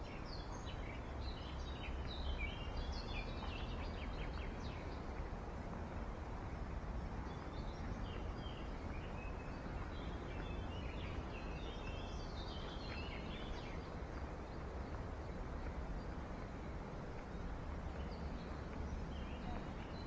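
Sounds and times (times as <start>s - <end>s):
outdoor background hiss: 0.0s - 20.0s
birds chirping: 15.2s - 20.0s.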